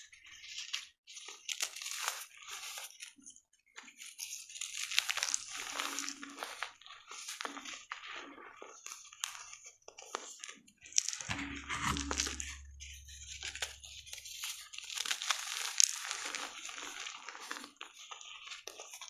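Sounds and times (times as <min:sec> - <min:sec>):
low steady hum: 0:11.3 - 0:14.5.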